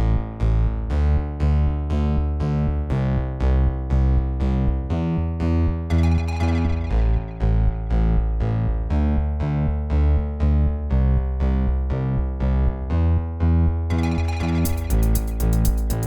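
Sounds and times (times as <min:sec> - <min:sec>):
strong bass beat: 0:13.9 - 0:16.0
synthesized keyboard and piano: 0:13.9 - 0:16.0.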